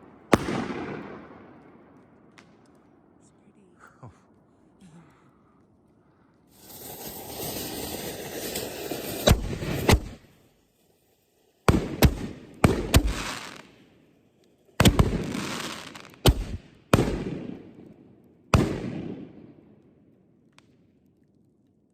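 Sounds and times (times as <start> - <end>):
firework shells booming: 0.0 - 3.2.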